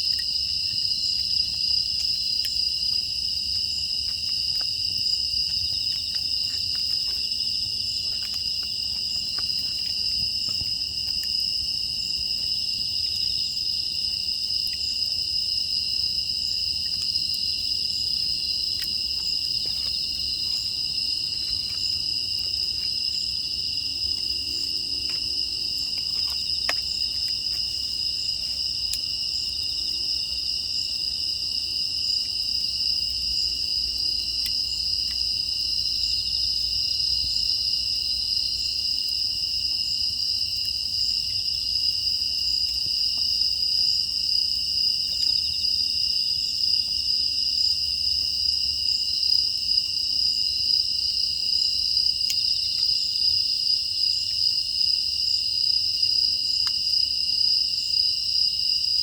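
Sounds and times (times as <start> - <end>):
crickets chirring: 0.0 - 59.0
wood fire crackling: 0.2 - 29.2.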